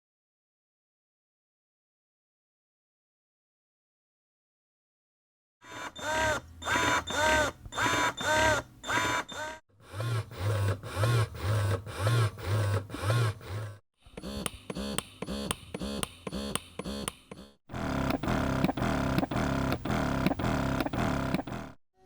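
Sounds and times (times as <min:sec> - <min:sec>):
rising and falling pump whir: 0:06.0 - 0:21.8
fast pump clicking: 0:14.2 - 0:21.8.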